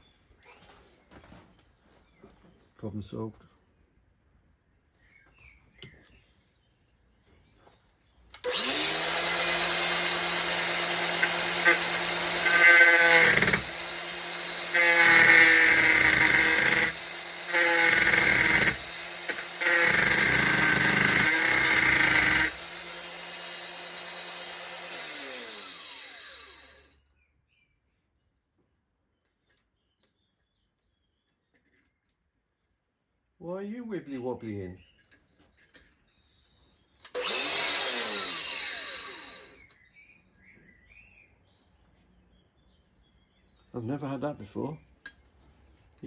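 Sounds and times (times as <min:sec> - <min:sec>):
power tool motor running: 0:08.4 - 0:26.9, 0:37.1 - 0:39.6.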